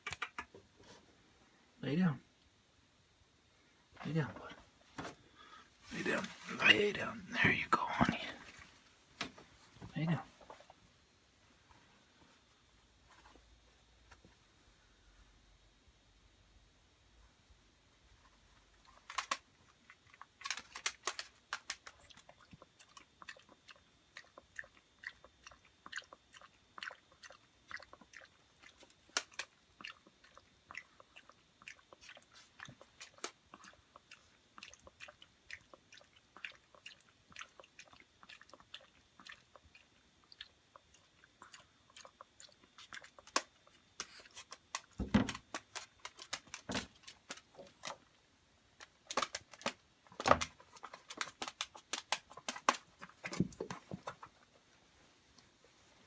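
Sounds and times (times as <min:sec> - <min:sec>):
dog crunching food: 0:18.8 - 0:48.0, 0:48.8 - 0:54.2.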